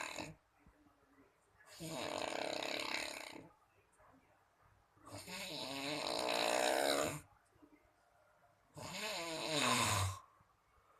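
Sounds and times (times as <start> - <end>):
person snoring: 1.7 - 3.4, 5.1 - 7.2, 8.8 - 10.3.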